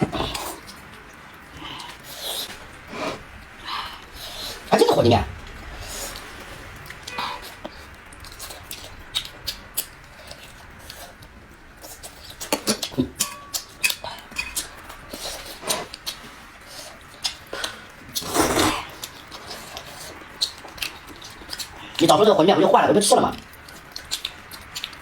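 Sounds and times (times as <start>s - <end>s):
noodles slurped and chewed: 5.7s - 22.1s, 23.4s - 25.0s.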